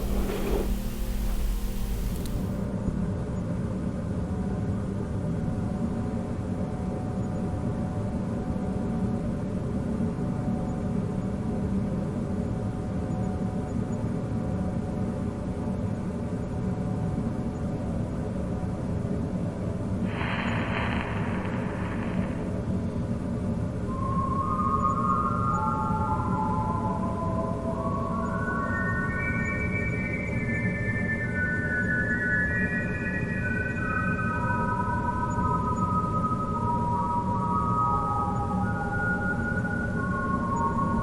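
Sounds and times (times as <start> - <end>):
hissing noise: 0.0 - 2.6, 20.1 - 23.1
low rumbling drone: 0.0 - 2.6, 20.1 - 23.5.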